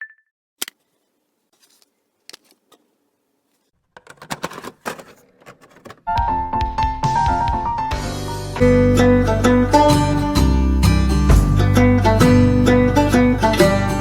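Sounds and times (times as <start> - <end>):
packaging rustling: 3.6 - 6.1.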